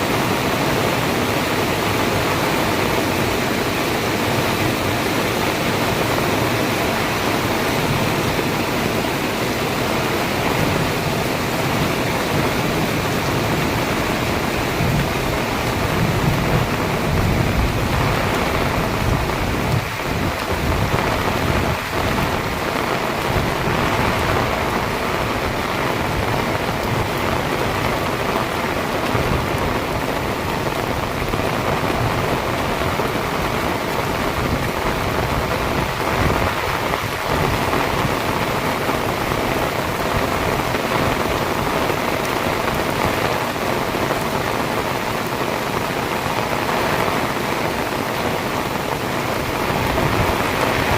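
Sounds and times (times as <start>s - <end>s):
heavy rain pouring: 0.0s - 50.9s
thunder rumble: 5.8s - 38.4s.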